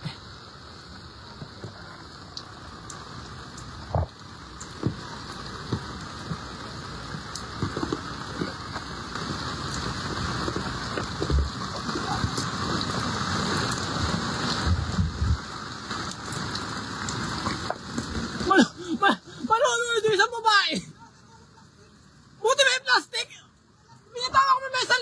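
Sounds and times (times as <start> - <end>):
water hissing: 3.4 - 19.3
low thumps and knocks: 10.1 - 12.5, 14.5 - 15.5.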